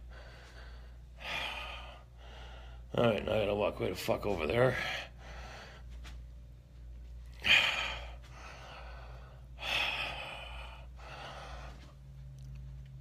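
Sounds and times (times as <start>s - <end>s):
man breathing heavily: 0.0s - 3.0s, 4.6s - 6.4s, 7.2s - 12.3s.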